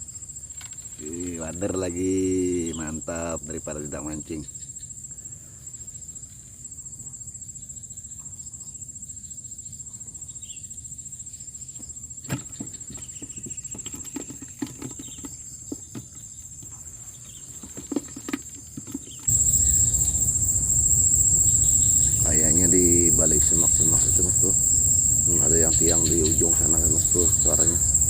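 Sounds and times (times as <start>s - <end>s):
insects chirring: 0.0s - 28.0s
low rumble: 19.3s - 28.0s.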